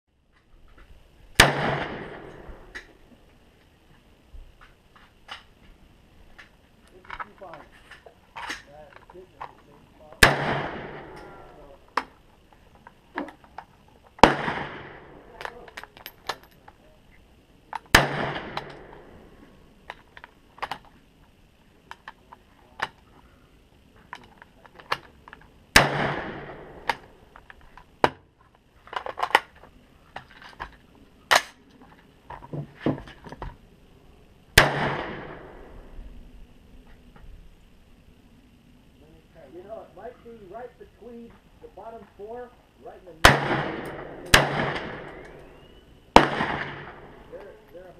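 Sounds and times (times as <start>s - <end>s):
rifle shots: 1.4s - 2.5s, 10.2s - 11.4s, 14.2s - 15.4s, 17.9s - 19.1s, 25.7s - 27.1s, 34.6s - 35.7s, 43.2s - 47.4s
faint sharp cracks: 28.9s - 32.4s.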